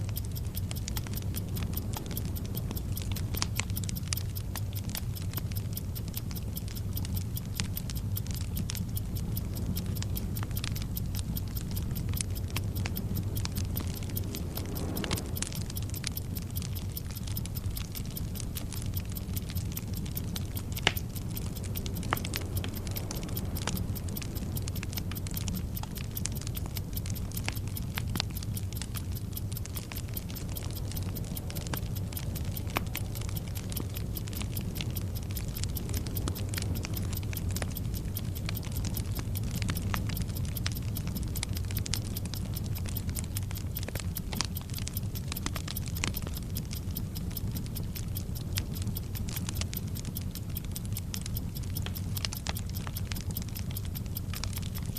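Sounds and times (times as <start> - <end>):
clock ticking: 0.0 - 54.9
fuse sputtering crackle: 0.0 - 54.9
sharp snaps: 0.0 - 54.9
low rumble: 8.6 - 28.2.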